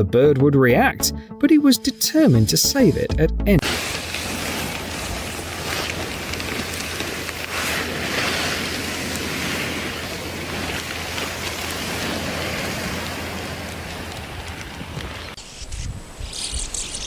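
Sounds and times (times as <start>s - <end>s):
raindrops ticking: 3.1s - 15.4s
rain falling: 3.6s - 15.4s.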